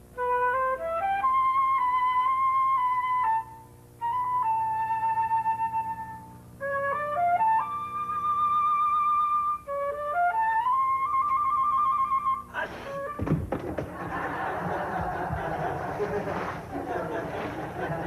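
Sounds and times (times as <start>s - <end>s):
solo flute melody: 0.0s - 13.2s.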